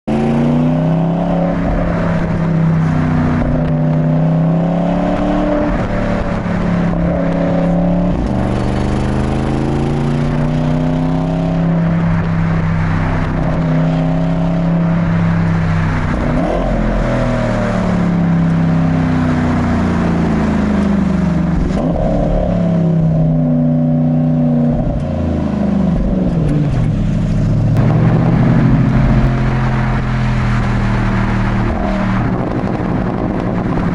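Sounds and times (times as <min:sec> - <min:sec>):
car engine revving through gears: 0:00.0 - 0:33.9.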